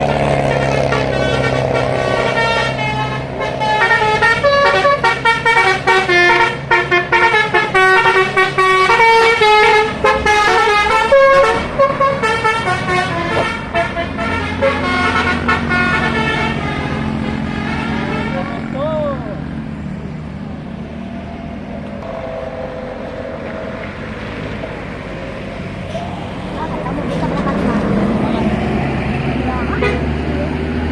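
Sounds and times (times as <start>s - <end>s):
bus musical horn tune: 0.0s - 18.6s, 29.6s - 30.2s
bus engine running: 0.0s - 30.9s.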